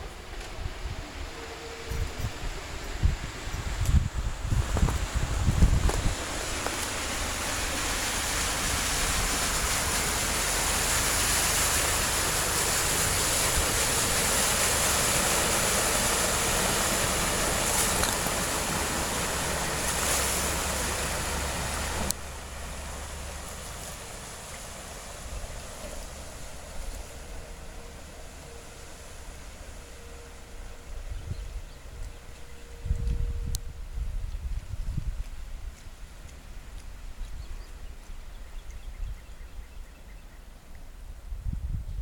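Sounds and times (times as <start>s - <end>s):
low truck engine rumble: 0.0s - 35.1s
rushing flood water: 4.3s - 31.1s.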